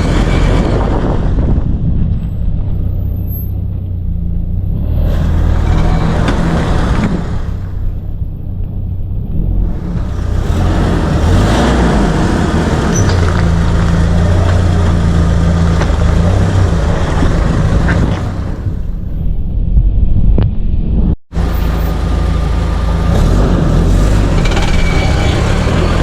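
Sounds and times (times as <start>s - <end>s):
car engine and road rumble: 0.0s - 26.0s
faint short squeaks: 24.4s - 25.8s.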